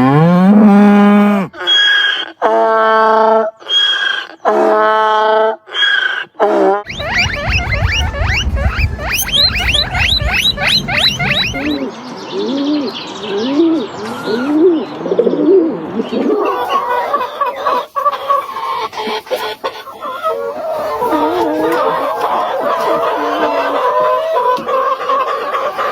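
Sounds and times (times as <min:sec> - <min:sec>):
hens clucking: 0:06.4 - 0:11.8, 0:15.4 - 0:25.9
bird calls: 0:06.9 - 0:25.9.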